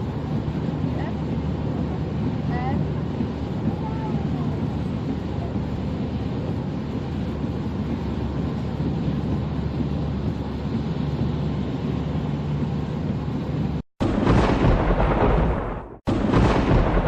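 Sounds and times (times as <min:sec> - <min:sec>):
car driving in rain: 0:00.0 - 0:17.0
loud rushing noise: 0:08.8 - 0:17.0.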